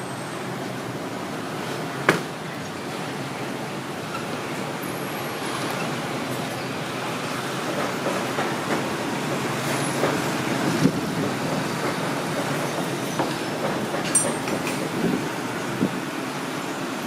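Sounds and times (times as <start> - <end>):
steady noisy rumble: 0.0 - 17.0
clinks and knocks: 12.4 - 14.8.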